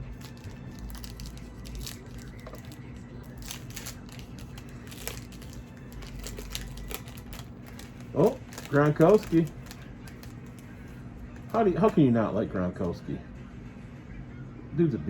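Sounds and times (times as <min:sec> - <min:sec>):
card packaging crinkling: 0:00.0 - 0:12.0.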